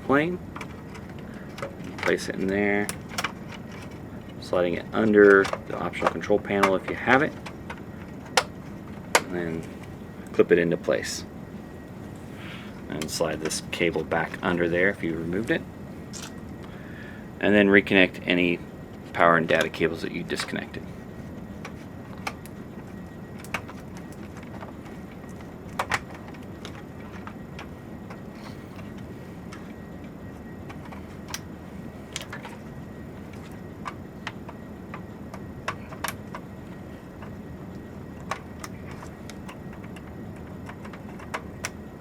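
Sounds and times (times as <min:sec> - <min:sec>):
low room hum: 0:00.0 - 0:42.0
cable connectors clicking: 0:05.0 - 0:09.4.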